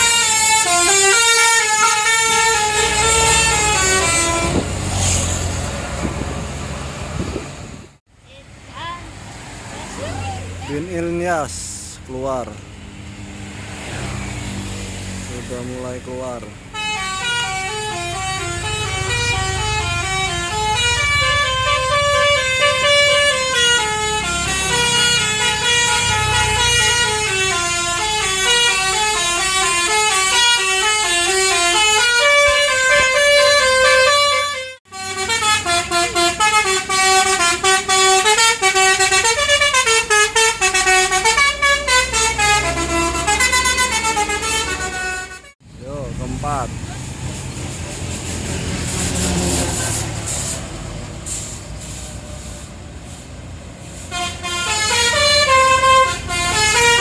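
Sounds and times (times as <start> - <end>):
bus horn playing melody: 0.0 - 5.5, 16.7 - 45.6, 53.9 - 57.0
bus engine rumble: 0.0 - 57.0.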